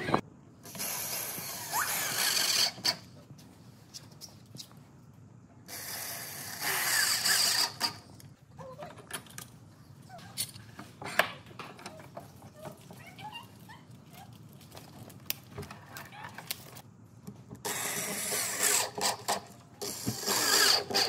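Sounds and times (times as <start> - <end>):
rasping scrape on wood: 17.7 - 21.0.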